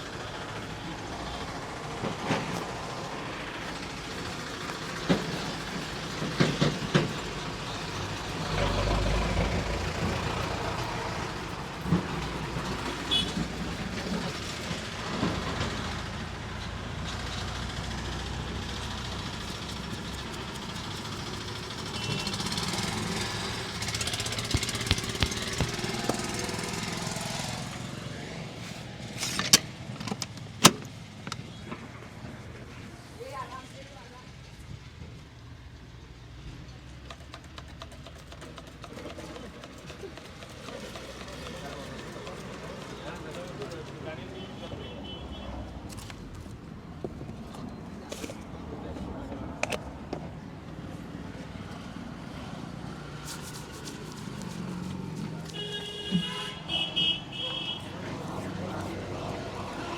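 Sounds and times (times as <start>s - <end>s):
heavy vehicle rumbling past: 0.0s - 29.1s
roadside traffic noise: 0.0s - 59.9s
sharp knocks: 23.9s - 26.6s.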